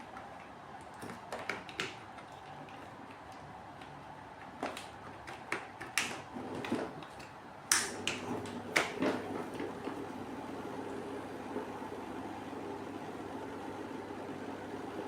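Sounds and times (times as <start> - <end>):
low machine hum: 6.3 - 15.0.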